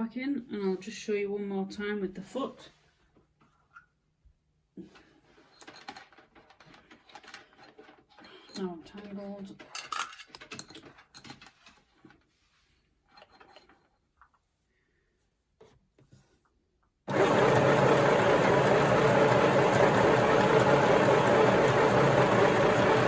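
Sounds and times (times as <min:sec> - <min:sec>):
sewing machine running: 0:17.1 - 0:23.0.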